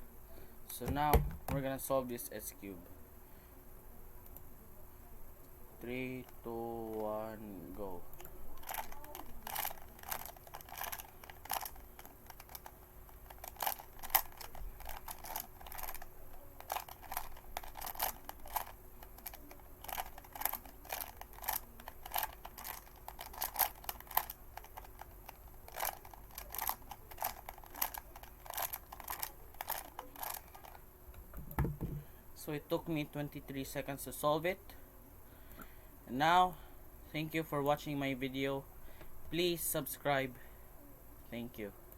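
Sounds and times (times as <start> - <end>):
puzzle cube clicking: 8.2 - 30.8.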